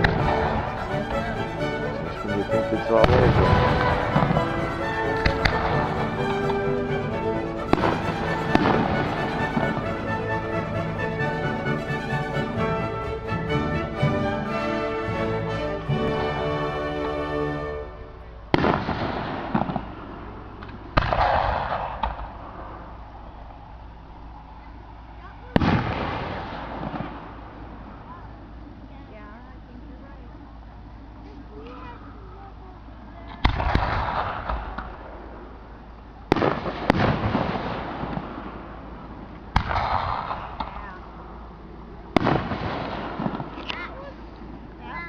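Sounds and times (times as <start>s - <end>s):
orchestral music: 0.0s - 20.4s
fireworks bursting and crackling: 3.0s - 9.9s, 18.5s - 22.7s, 36.3s - 40.8s, 42.1s - 43.7s.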